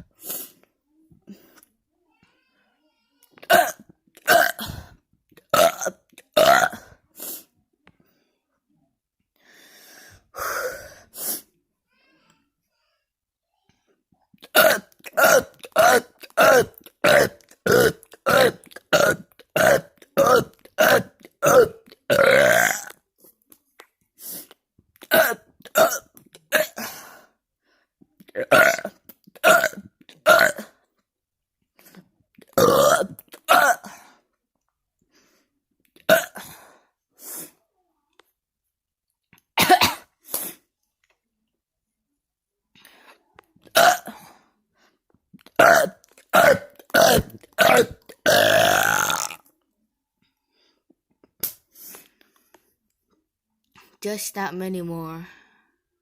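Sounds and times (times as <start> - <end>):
man burping: 3.4 - 4.8, 5.5 - 6.9, 14.5 - 23.0, 25.0 - 26.8, 28.4 - 30.7, 32.6 - 34.0, 36.1 - 36.4, 43.7 - 44.2, 45.6 - 49.5.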